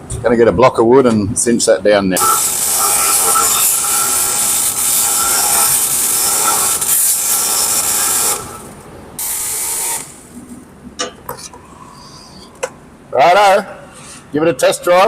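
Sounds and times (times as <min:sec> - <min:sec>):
power tool running on wood: 0:02.2 - 0:10.2.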